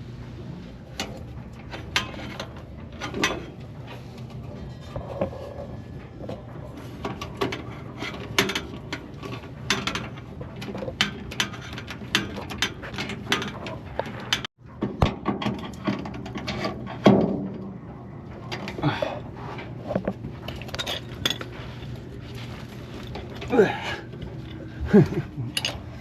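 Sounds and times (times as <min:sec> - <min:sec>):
steady low hum: 0:00.0 - 0:26.0
metal tool clicks and clanks: 0:25.5 - 0:25.9.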